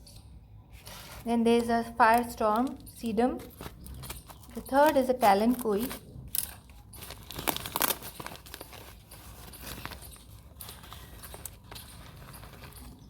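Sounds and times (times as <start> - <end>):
packaging rustling and crinkling: 3.4 - 13.0.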